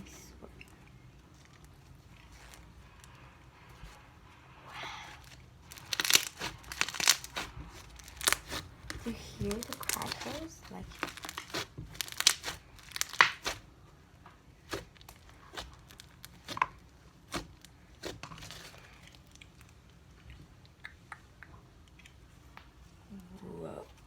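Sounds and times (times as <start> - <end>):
slime crackling and popping: 4.8 - 22.2.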